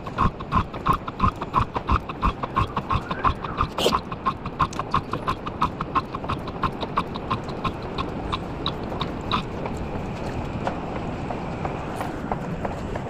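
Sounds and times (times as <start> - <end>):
sharp regular clicks: 0.0 - 10.4
steady machine noise: 0.0 - 13.0.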